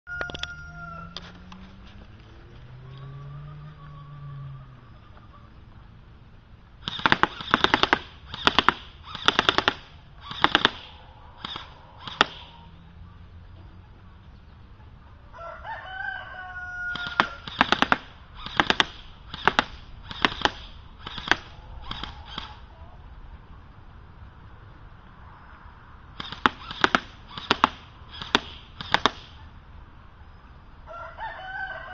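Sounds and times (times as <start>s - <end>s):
airsoft rifle firing bursts: 6.8s - 12.5s, 16.9s - 22.6s, 26.2s - 29.4s.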